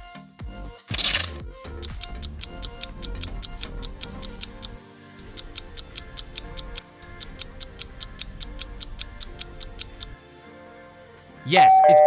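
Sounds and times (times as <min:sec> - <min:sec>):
quiet background music: 0:00.0 - 0:12.0
countdown clock ticking: 0:01.7 - 0:10.2.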